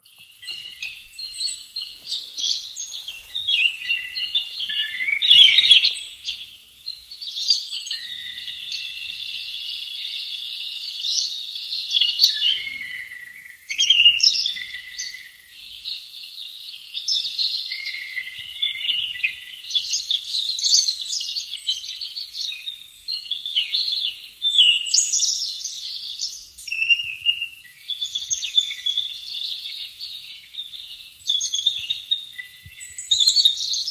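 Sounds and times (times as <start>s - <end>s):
birds chirping and trilling: 0.0s - 33.9s.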